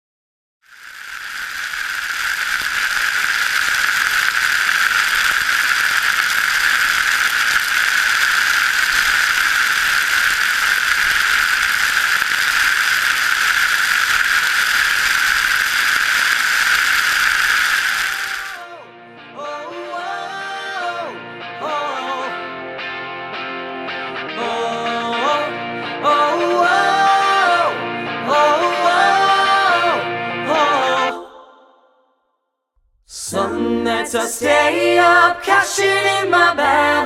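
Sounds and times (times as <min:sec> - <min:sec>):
loud rattling hiss: 0:00.6 - 0:18.7.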